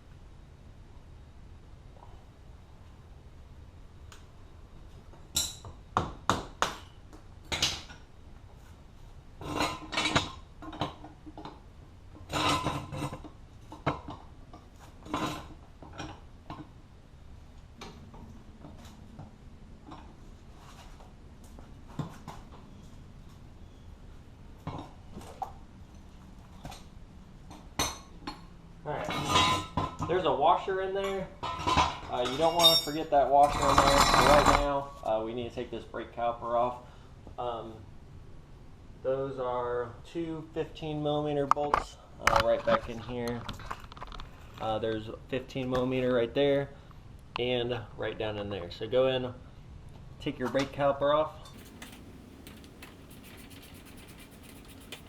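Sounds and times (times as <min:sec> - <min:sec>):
metal tools clinking on hub: 0:32.2 - 0:34.0.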